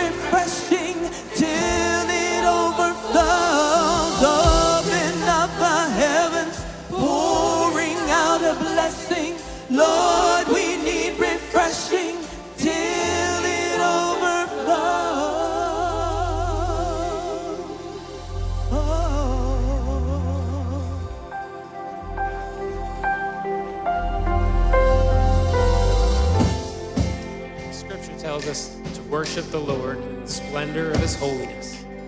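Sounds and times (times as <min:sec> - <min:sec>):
person singing with vibrato: 0:00.0 - 0:27.6
band accompaniment: 0:00.0 - 0:32.0
low sustained bass note: 0:22.0 - 0:26.6.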